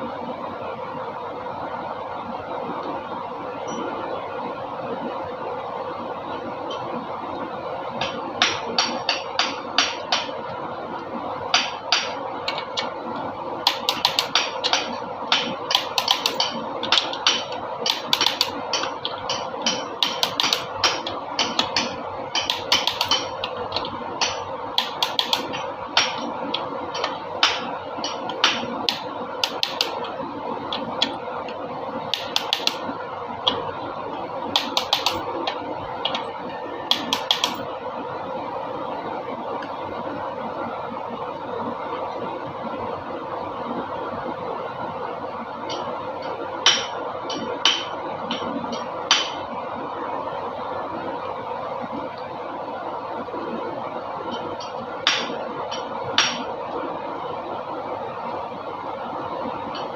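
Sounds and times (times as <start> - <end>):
steady hum: 0.0 - 59.9
metallic clicks and taps: 13.7 - 32.8, 34.5 - 36.3, 36.9 - 37.6.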